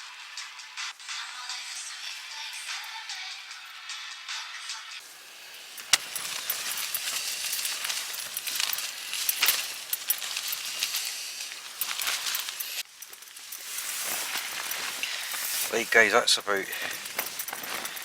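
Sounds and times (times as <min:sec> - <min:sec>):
small sharp ticks and rattles: 0:05.0 - 0:18.0
wind flapping tent fabric: 0:05.0 - 0:18.0.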